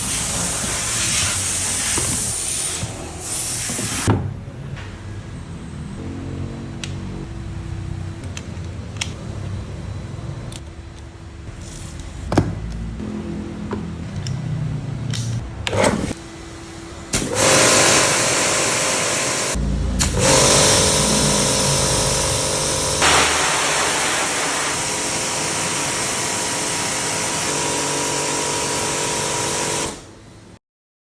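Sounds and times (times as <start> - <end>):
pressure washer motor hum: 0.0 - 4.1, 11.7 - 30.3
water jet hissing: 0.0 - 4.1, 17.2 - 27.3.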